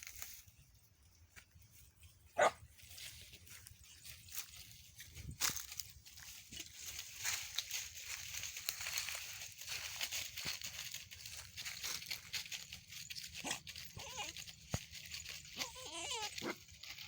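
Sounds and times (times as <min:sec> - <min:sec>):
animal wavering calls: 0:13.4 - 0:14.6, 0:15.5 - 0:16.6.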